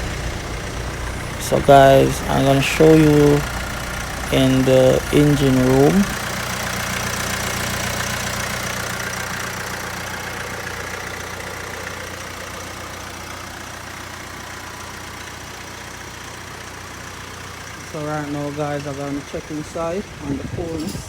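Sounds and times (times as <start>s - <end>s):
air conditioning compressor running: 0.0s - 21.0s
car engine idling: 0.0s - 21.0s.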